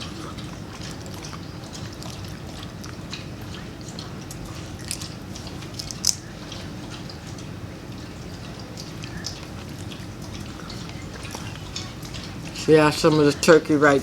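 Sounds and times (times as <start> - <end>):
peanut shells cracking wetly: 4.0 - 7.1.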